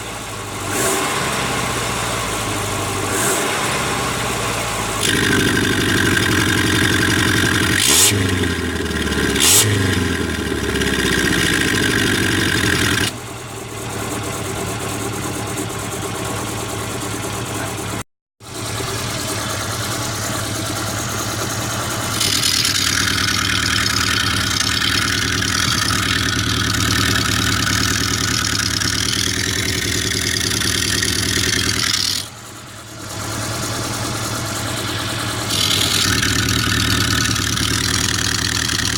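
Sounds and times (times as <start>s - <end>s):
car engine revving: 3.0s - 13.1s, 18.6s - 38.9s.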